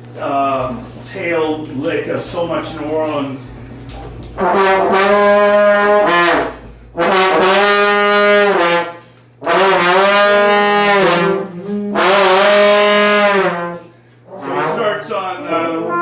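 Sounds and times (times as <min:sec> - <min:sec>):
brass instrument phrase: 0:04.3 - 0:16.0.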